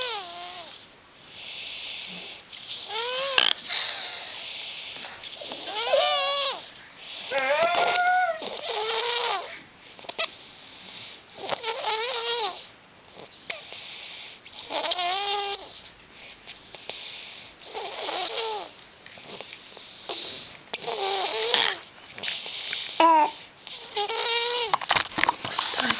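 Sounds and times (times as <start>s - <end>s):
breathy hiss: 0.0s - 11.6s, 12.4s - 25.9s
child snoring wheezily: 1.4s - 9.7s, 22.8s - 24.7s.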